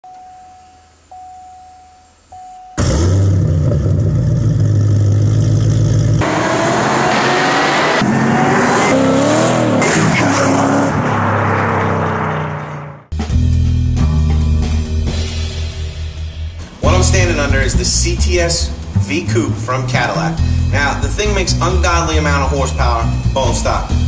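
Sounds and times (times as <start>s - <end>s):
car engine revving: 2.8s - 13.1s.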